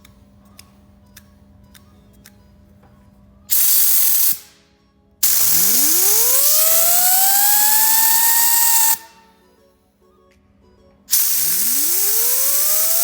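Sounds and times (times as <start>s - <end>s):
blower motor fan whine: 5.2s - 9.3s, 11.2s - 13.0s.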